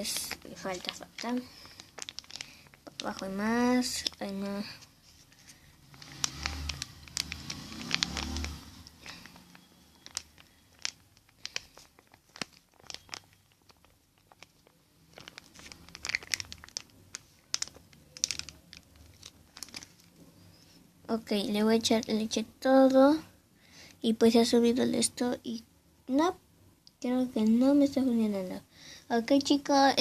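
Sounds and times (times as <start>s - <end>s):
plastic container clicking and crinkling: 0.0s - 4.4s, 5.9s - 20.2s.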